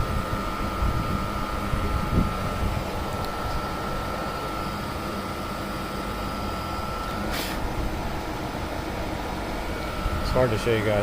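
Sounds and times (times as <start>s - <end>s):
smoke machine humming: 0.0s - 11.0s
short hiss: 7.3s - 7.6s.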